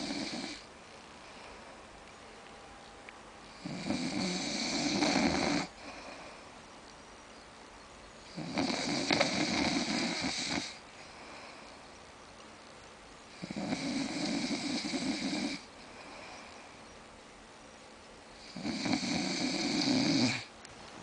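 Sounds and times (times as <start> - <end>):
man snoring: 0.0 - 0.7, 3.5 - 6.0, 8.3 - 10.8, 13.4 - 15.7, 18.4 - 20.5
quiet breathing: 0.0 - 2.7, 3.4 - 7.1, 8.2 - 20.6.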